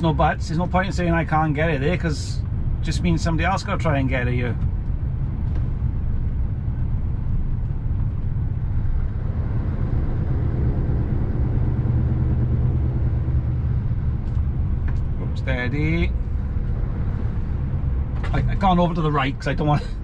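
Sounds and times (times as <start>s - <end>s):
road rumble: 0.0s - 20.0s
lorry engine drone: 5.4s - 20.0s.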